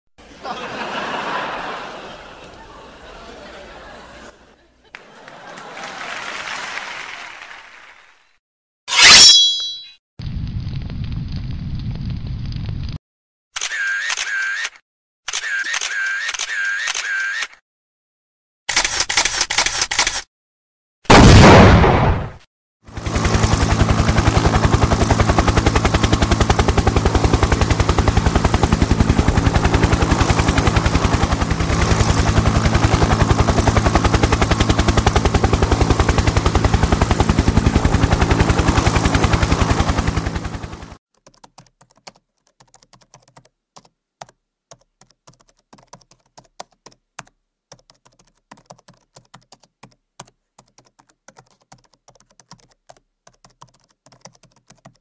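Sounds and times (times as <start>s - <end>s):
computer keyboard typing: 41.1s - 55.0s.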